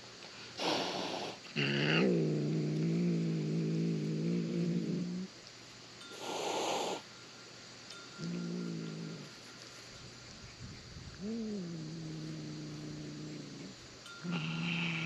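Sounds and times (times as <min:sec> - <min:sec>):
cat hissing: 0:00.6 - 0:02.1
cat growling: 0:00.6 - 0:05.3, 0:11.2 - 0:15.0.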